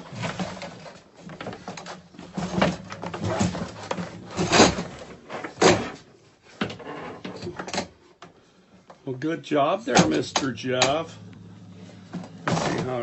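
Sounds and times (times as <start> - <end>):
clattering and thumps: 0.0 - 7.9, 11.8 - 13.0.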